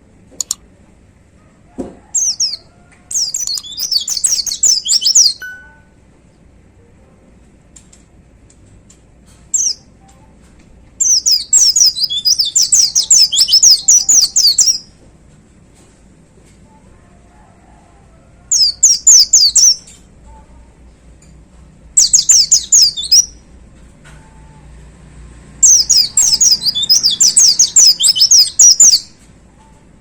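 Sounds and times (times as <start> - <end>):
bird singing high falling chirps: 2.2 - 5.8, 11.0 - 14.9, 18.5 - 19.8, 22.0 - 23.4, 25.6 - 29.1.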